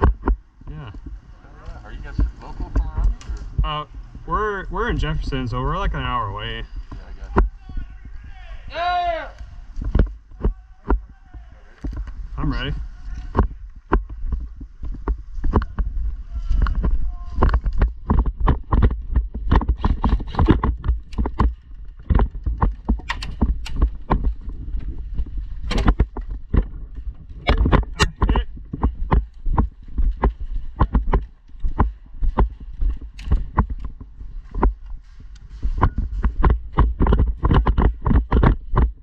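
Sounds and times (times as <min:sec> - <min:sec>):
footsteps on outdoor ground: 0:00.0 - 0:39.0
camera handling rumble: 0:09.4 - 0:12.4, 0:13.0 - 0:39.0
gear knocking: 0:13.1 - 0:39.0
sharp cracks: 0:16.4 - 0:24.6.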